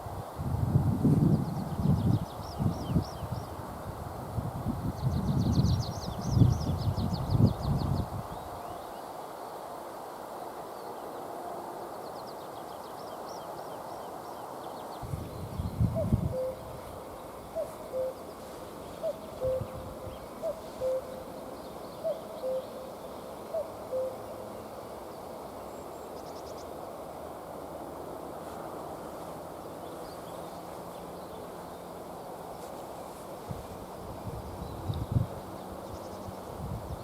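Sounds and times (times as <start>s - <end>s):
small songbirds twittering: 1.2s - 4.0s, 4.8s - 9.2s, 11.9s - 27.4s, 28.4s - 37.0s
cuckoo calling: 15.9s - 16.8s, 17.5s - 21.4s, 22.0s - 24.4s.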